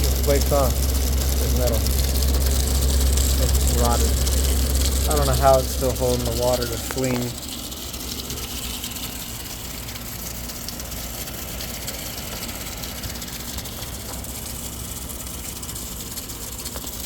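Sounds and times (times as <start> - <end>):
air conditioner compressor hum: 0.0 - 17.0
condenser fan rushing: 0.0 - 17.0.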